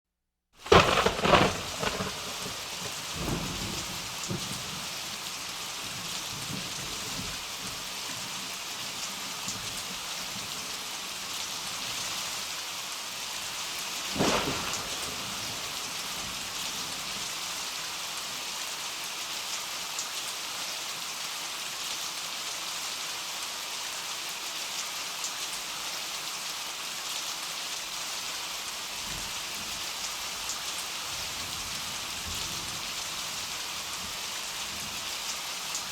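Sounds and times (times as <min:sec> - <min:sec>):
sharp thunderclap: 0:00.6 - 0:04.9, 0:14.1 - 0:17.2
thunder rumbling: 0:00.6 - 0:07.5, 0:14.0 - 0:17.2
heavy rain pouring: 0:00.6 - 0:35.9.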